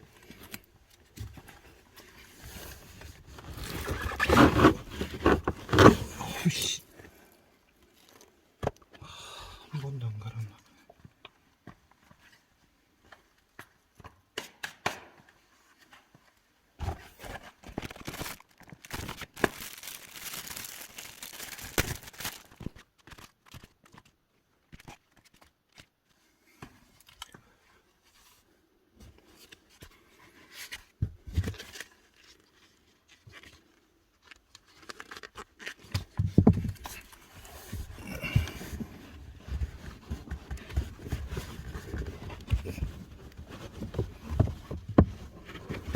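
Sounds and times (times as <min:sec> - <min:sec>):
plastic parts clicking and scraping: 0:00.2 - 0:06.3
crinkling and tearing: 0:01.4 - 0:06.4, 0:16.9 - 0:26.2, 0:31.4 - 0:45.9.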